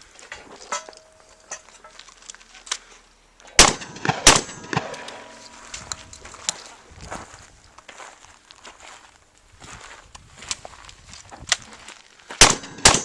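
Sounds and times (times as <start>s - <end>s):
shotgun shots: 3.6s - 5.4s, 12.4s - 13.0s.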